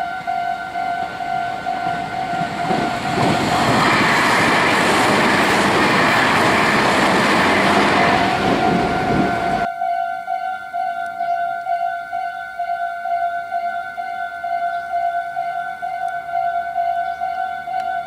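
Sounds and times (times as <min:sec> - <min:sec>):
crossing warning bell ringing: 0:00.0 - 0:18.0
train wheels clattering over rails: 0:00.4 - 0:09.7.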